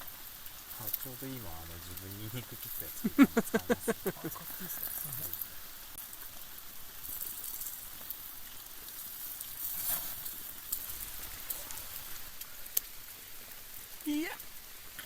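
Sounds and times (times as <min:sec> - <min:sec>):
meat sizzling: 0:00.0 - 0:15.0.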